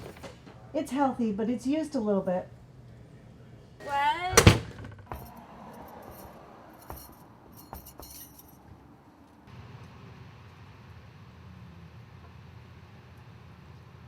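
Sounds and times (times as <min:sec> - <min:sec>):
metal objects jingling: 0:05.1 - 0:08.7.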